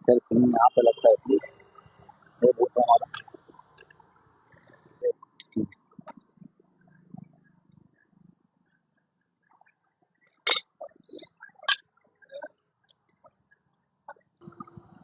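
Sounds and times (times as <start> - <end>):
metallic clinks of tools: 10.4 - 11.8.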